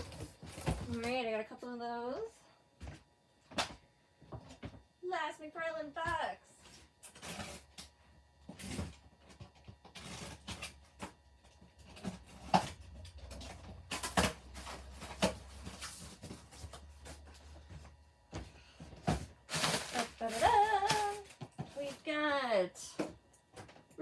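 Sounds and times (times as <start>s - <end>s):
cardboard and packaging rustling: 0.0s - 1.3s, 6.6s - 24.0s.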